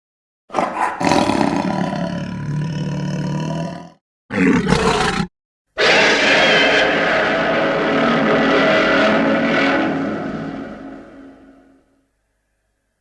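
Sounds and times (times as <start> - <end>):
monster roaring: 0.5 - 11.4.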